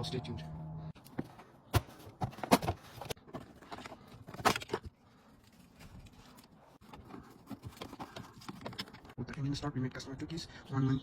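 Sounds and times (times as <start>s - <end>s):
handling clicks and knocks: 6.8s - 9.2s.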